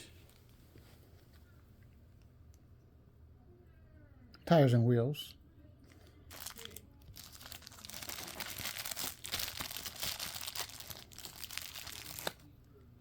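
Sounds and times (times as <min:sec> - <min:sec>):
plastic packaging crinkling: 0:06.3 - 0:12.5.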